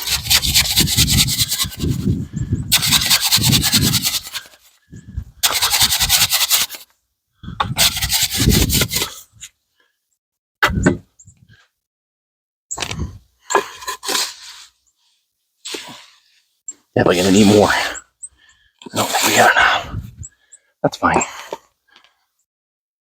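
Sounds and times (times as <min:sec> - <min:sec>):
tool scraping wet concrete: 0:00.0 - 0:04.7, 0:05.4 - 0:06.8, 0:07.8 - 0:09.2, 0:13.6 - 0:14.4, 0:17.2 - 0:17.8, 0:19.0 - 0:19.5.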